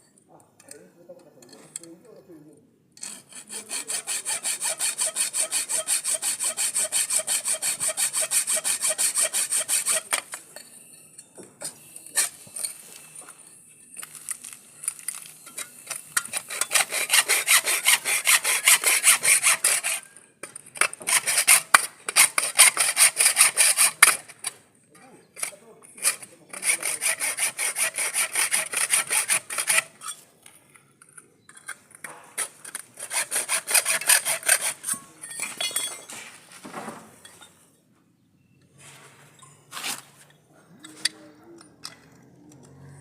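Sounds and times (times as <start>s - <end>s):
hacksaw cutting metal pipe: 3.0s - 10.6s, 11.6s - 13.3s, 15.4s - 24.6s, 25.4s - 30.2s, 31.5s - 35.2s.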